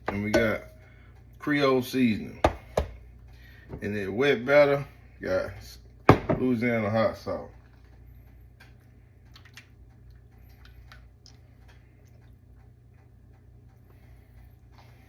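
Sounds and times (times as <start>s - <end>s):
steady low hum: 0.0s - 15.0s
wet handling sounds: 7.6s - 12.6s.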